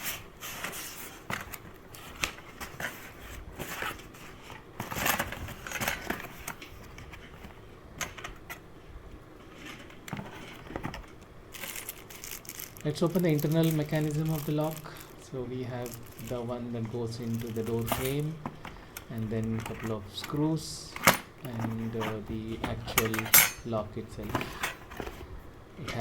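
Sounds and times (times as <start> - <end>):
packaging rustling: 0.0 - 8.6, 9.4 - 20.6.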